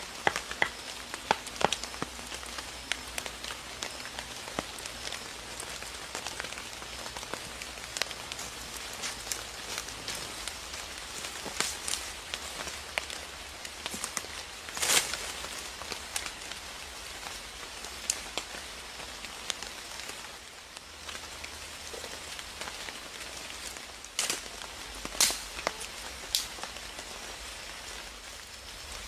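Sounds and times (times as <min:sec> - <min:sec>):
sharp taps of raindrops: 0:00.0 - 0:10.6, 0:18.0 - 0:19.7, 0:23.6 - 0:26.8
rain patter: 0:00.0 - 0:29.0.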